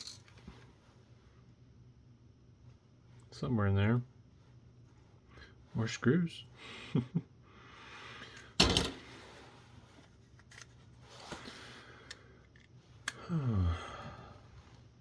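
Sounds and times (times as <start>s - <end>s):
plastic parts clicking and clattering: 8.4s - 9.0s.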